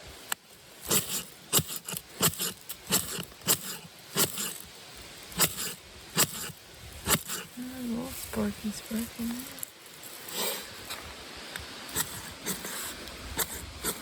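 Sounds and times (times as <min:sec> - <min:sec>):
fire-starter rod scraping: 0:00.7 - 0:14.0.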